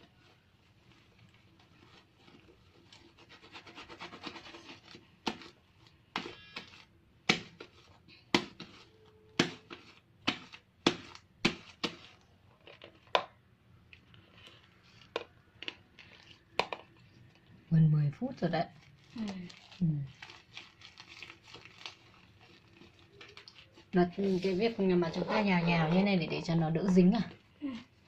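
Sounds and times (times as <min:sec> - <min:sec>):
slime crackling: 0:18.7 - 0:28.0.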